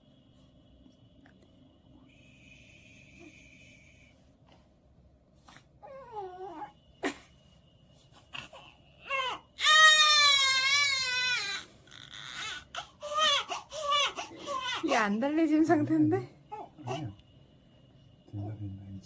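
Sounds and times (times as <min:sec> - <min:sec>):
baby crying and whimpering: 0:05.8 - 0:06.8, 0:08.3 - 0:15.0, 0:16.5 - 0:17.2.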